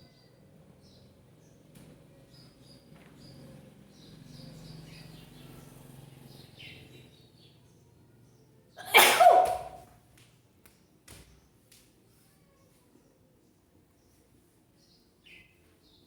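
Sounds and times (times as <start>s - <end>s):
sharp sneeze: 8.8s - 9.8s.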